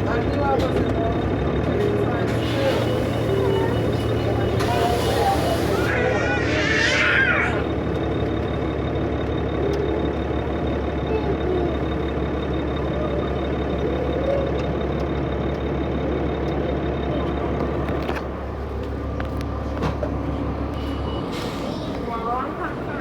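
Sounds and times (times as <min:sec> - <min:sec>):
bus diesel engine running: 0:00.0 - 0:23.0.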